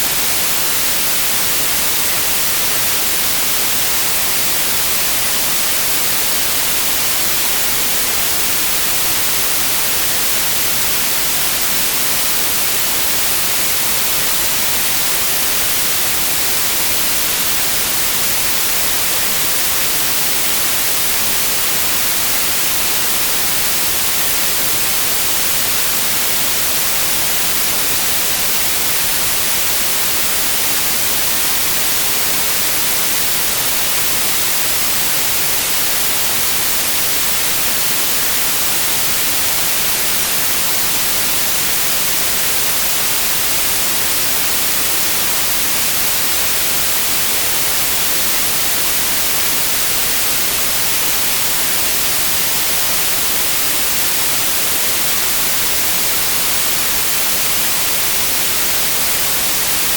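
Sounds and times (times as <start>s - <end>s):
white noise hiss: 0.0s - 59.9s.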